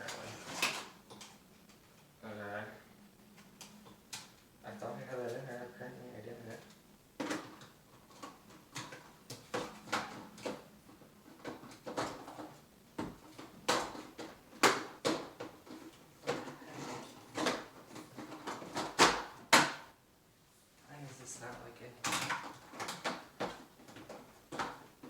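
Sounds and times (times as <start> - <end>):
plastic parts clicking and knocking: 6.6 - 19.8, 22.0 - 25.0.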